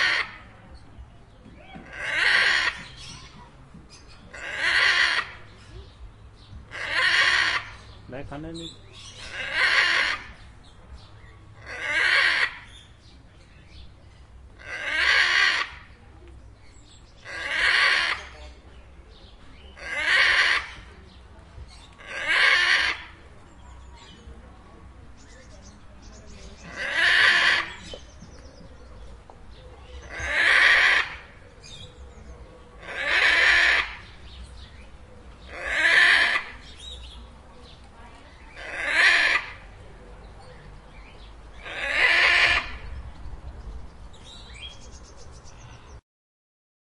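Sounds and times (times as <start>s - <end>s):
parrot calling: 1.8s - 3.4s, 4.3s - 5.4s, 6.7s - 7.8s, 9.0s - 10.4s, 11.6s - 12.8s, 14.6s - 15.8s, 17.2s - 18.4s, 19.8s - 20.8s, 22.0s - 23.1s, 26.7s - 27.9s, 30.0s - 31.3s, 32.8s - 34.2s, 35.5s - 37.1s, 38.4s - 39.7s, 41.6s - 42.9s.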